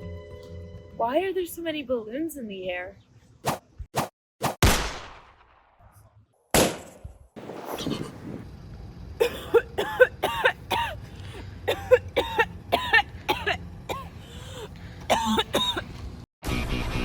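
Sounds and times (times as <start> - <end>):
person coughing: 9.2 - 11.0, 11.7 - 15.9.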